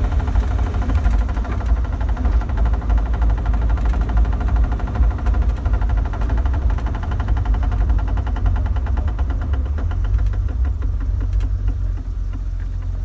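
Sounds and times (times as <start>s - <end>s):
car engine rumble: 0.0s - 13.0s.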